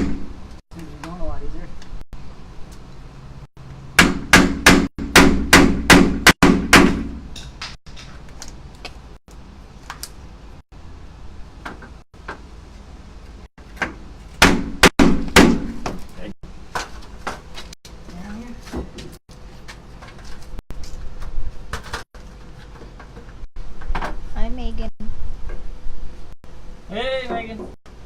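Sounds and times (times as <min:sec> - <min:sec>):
hammer striking: 0:04.0 - 0:07.8.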